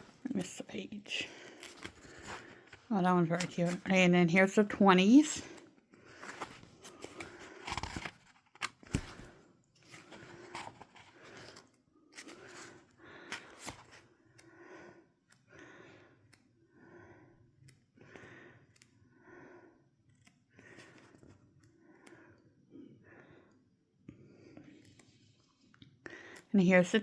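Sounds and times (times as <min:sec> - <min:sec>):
paper pages turning: 0:01.4 - 0:04.4, 0:06.1 - 0:14.0.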